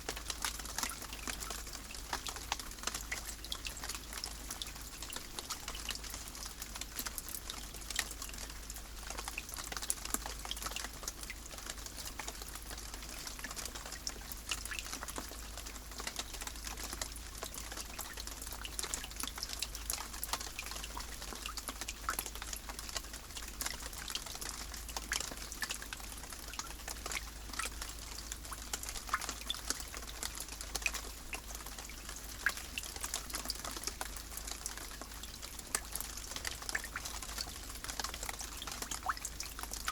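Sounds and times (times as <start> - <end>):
steady rain hiss: 0.0 - 10.6.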